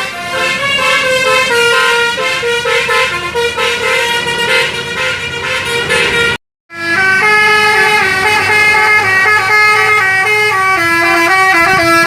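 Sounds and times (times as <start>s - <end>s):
bus musical horn melody: 0.0s - 12.0s.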